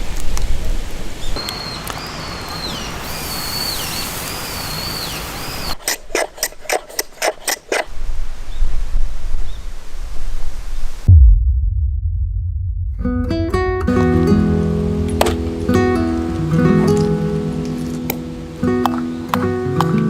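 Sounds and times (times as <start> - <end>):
thin whistle: 1.4 - 5.8
low rumble: 11.0 - 17.8
steady rushing noise: 11.0 - 18.6
sharp knocks: 12.8 - 15.9.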